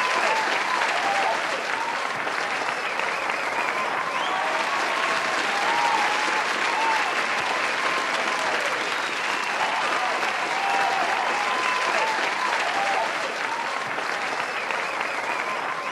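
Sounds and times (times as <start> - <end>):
crowd applause: 0.0 - 15.9.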